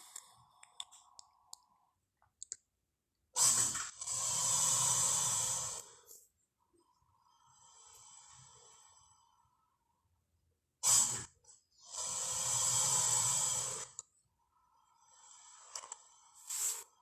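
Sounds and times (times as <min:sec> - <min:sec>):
creature sharp snort: 0:10.8 - 0:11.3
creature hissing breath: 0:16.4 - 0:16.9
long hissing exhale: 0:16.4 - 0:16.9.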